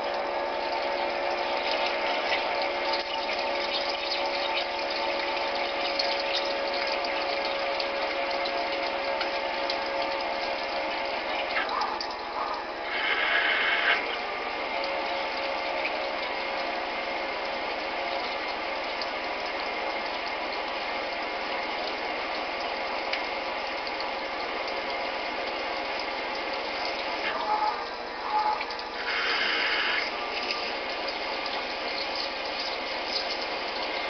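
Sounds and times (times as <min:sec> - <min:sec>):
lathe running with whining tones: 0:00.0 - 0:18.8.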